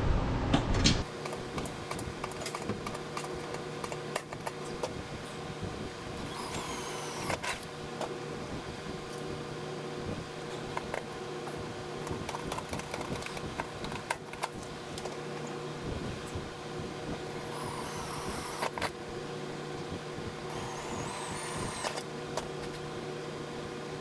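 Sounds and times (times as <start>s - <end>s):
steady low hum: 0.0s - 24.0s
small power tool whining: 6.2s - 7.7s, 17.3s - 19.0s, 20.4s - 22.8s.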